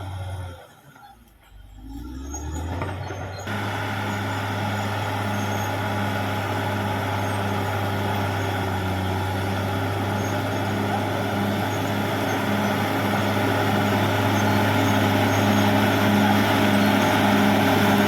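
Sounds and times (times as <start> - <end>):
bulldozer diesel engine droning: 0.0 - 18.0.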